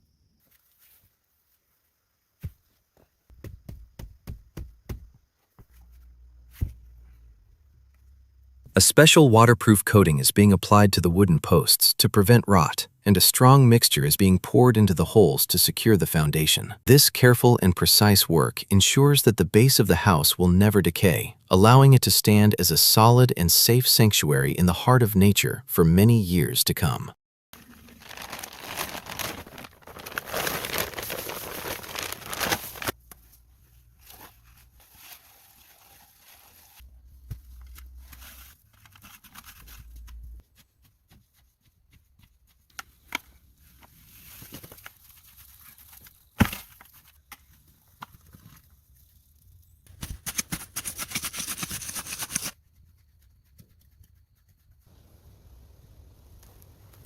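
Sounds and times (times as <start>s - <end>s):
scraping and rustling: 27.6s - 41.4s.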